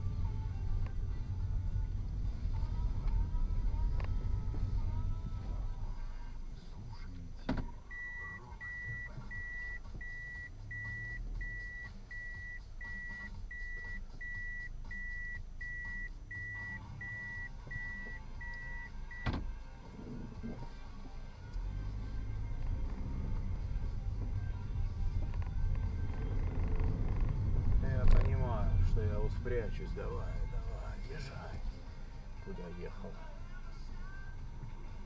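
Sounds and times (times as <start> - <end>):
car rumble: 0.0 - 35.0
short high warning beeps: 7.9 - 19.2.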